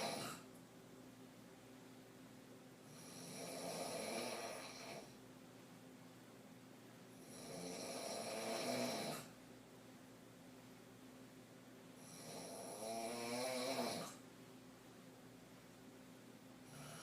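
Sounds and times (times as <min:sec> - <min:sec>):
woman snoring: 0:00.0 - 0:00.4, 0:02.9 - 0:05.2, 0:07.2 - 0:09.3, 0:12.0 - 0:14.2, 0:16.7 - 0:17.0.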